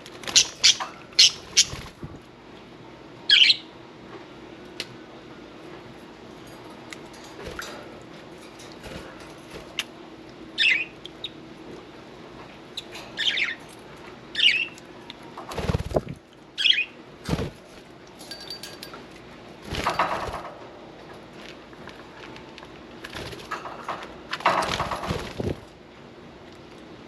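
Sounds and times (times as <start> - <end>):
wings flapping: 0.0 - 2.2, 15.4 - 16.2, 17.2 - 17.9, 19.6 - 20.6, 23.0 - 25.7
budgie chirping: 0.3 - 1.8.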